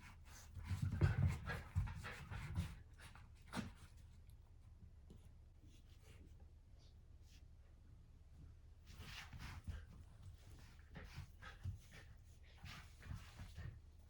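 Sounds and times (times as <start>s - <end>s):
dog panting and snuffling: 9.2s - 14.0s.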